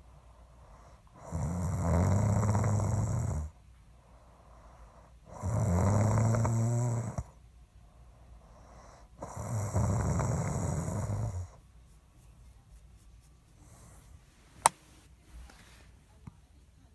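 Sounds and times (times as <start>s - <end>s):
man snoring: 1.2s - 3.5s, 5.3s - 7.3s, 9.2s - 11.5s.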